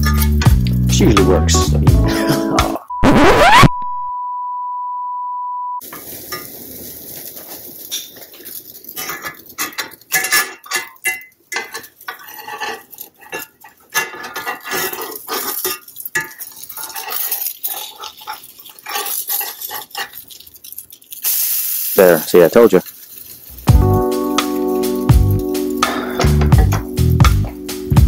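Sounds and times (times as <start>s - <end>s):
spatula scraping a frying pan: 7.3s - 20.8s, 22.8s - 23.6s.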